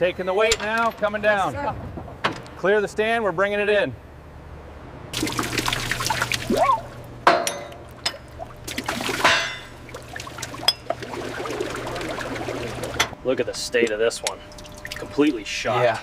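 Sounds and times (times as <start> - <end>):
liquid trickling and pouring: 5.2 - 7.0, 7.7 - 13.1, 14.4 - 15.4.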